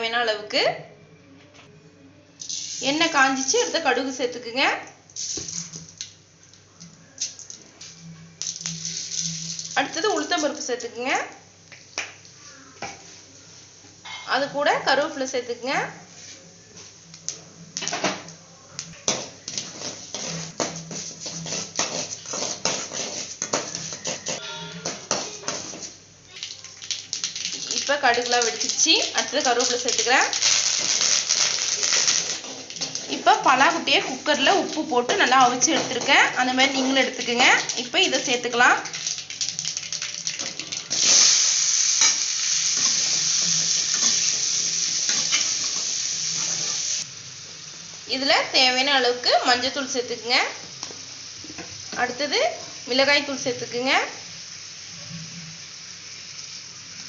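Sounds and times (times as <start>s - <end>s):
mustard seeds popping in hot oil: 8.4s - 10.9s, 18.8s - 47.0s.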